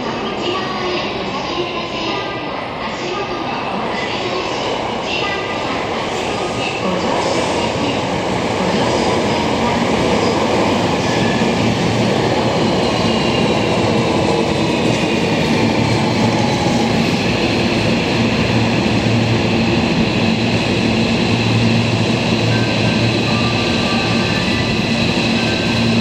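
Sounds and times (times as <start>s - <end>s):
electric train rumbling and whining: 0.0s - 26.0s.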